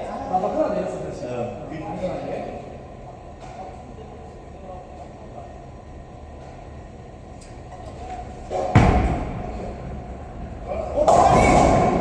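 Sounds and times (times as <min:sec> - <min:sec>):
bowling ball rolling: 0:07.9 - 0:12.0
bowling pins crashing: 0:08.2 - 0:12.0.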